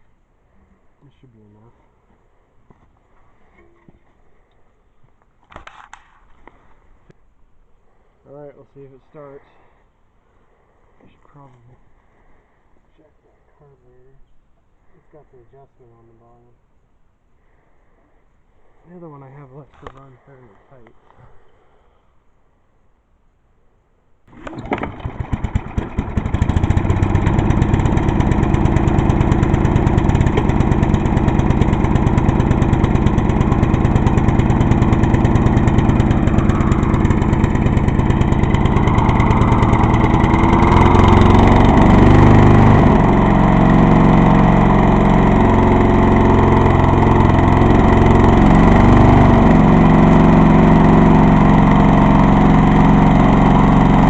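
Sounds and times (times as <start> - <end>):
lawn mower engine running: 24.3 - 54.0.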